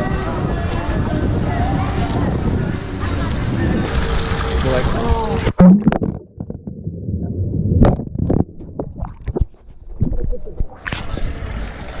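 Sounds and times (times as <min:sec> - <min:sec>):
underwater pops and knocks: 0:05.5 - 0:06.8, 0:07.8 - 0:11.1
muffled underwater wash: 0:05.5 - 0:12.0.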